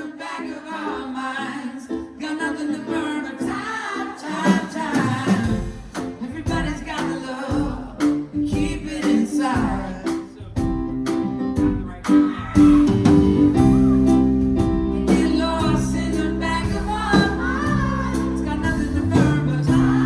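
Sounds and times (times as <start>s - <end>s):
person singing: 0.0s - 10.9s, 12.0s - 20.0s
live band music: 4.3s - 20.0s
heavy low beat: 7.5s - 20.0s.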